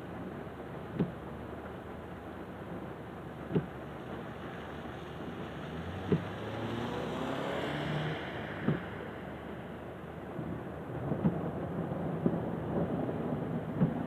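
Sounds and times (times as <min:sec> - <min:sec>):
rain hiss: 0:00.0 - 0:14.0
vehicle passing: 0:05.5 - 0:10.1.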